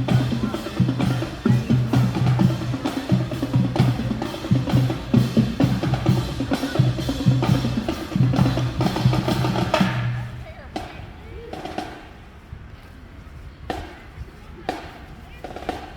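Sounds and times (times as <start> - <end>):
drumline on snare and bass drums: 0.0 - 12.2, 14.6 - 15.9.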